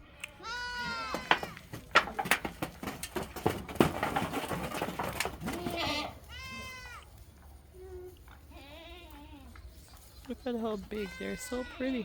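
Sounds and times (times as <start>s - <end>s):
goats bleating: 0.0s - 1.7s, 5.4s - 7.1s, 7.8s - 9.5s, 10.9s - 12.0s
clatter and knocks of herd: 0.6s - 6.5s.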